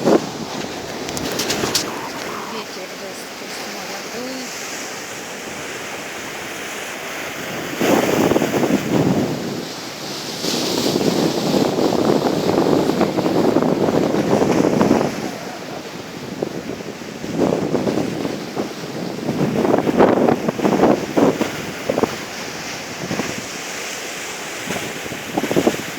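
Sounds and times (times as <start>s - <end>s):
sea surf washing on shore: 0.0s - 25.9s
wind blowing across microphone: 0.0s - 25.9s.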